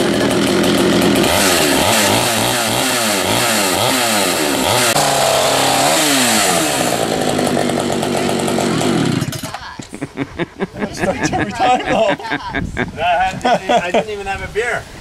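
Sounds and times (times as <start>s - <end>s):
chainsaw engine revving: 0.0s - 9.6s.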